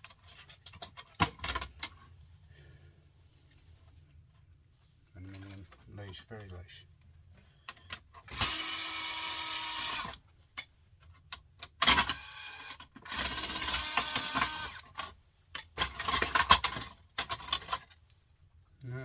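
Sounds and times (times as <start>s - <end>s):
handheld power tool motor whining: 8.3s - 10.2s, 11.8s - 14.9s.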